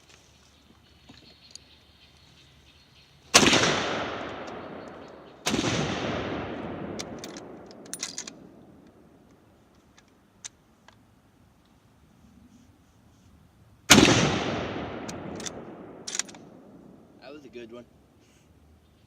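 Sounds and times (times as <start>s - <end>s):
gunshots with long echo: 3.3s - 9.1s, 13.9s - 17.2s.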